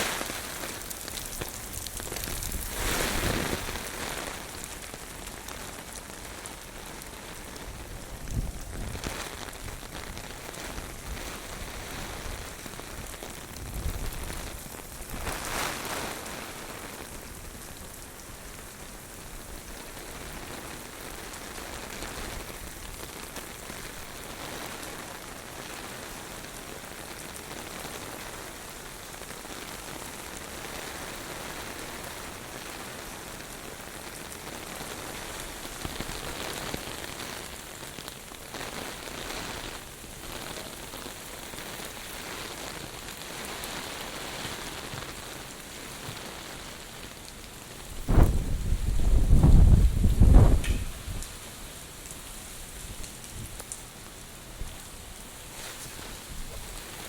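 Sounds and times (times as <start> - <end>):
heavy rain pouring on hard surfaces: 0.0 - 57.0
strong wind: 1.7 - 4.6, 7.7 - 16.6, 47.9 - 51.6.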